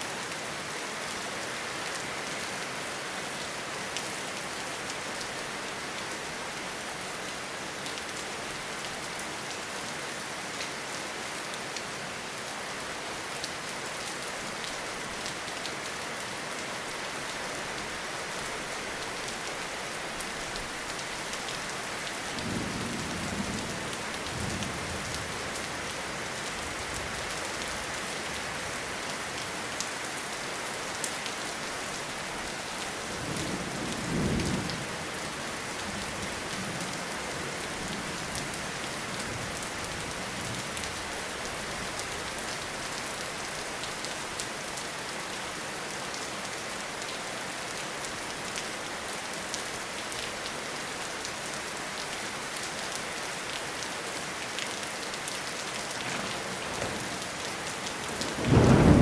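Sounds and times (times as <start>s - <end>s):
heavy rainfall: 0.0s - 59.0s
raindrops ticking on leaves: 13.1s - 59.0s
thunder rumbling: 56.0s - 59.0s.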